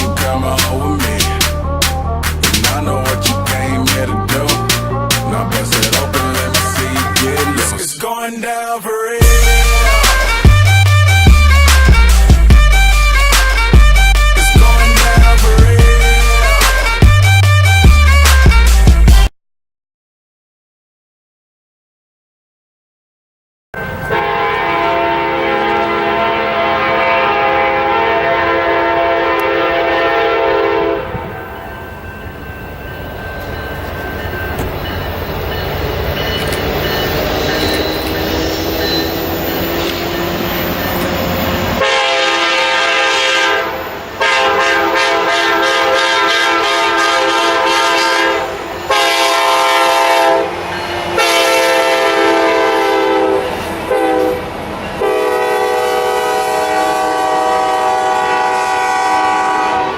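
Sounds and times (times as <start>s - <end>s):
locomotive air horn blasts: 3.8s - 7.8s, 9.2s - 19.0s, 23.8s - 31.6s, 37.3s - 59.9s
low rumble of passing locomotives: 23.8s - 59.9s
clickety-clack of train wheels: 33.3s - 40.9s.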